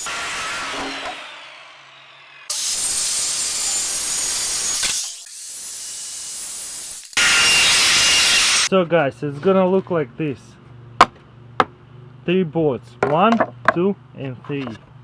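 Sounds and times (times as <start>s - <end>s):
power saw cutting wood: 0.0s - 8.7s.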